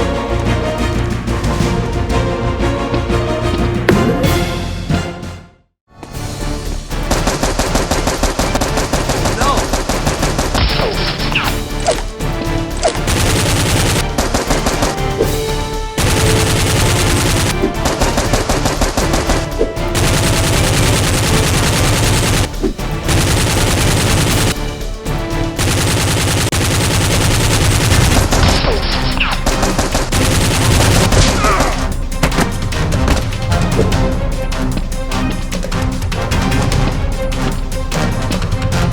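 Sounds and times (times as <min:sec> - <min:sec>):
automatic gunfire: 0:07.1 - 0:11.4, 0:13.1 - 0:15.0, 0:16.0 - 0:22.5, 0:23.1 - 0:24.6, 0:25.6 - 0:31.7.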